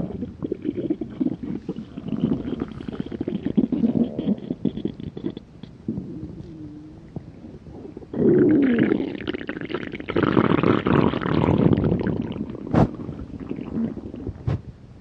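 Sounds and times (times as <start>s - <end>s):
stomach growling: 0.0s - 14.6s.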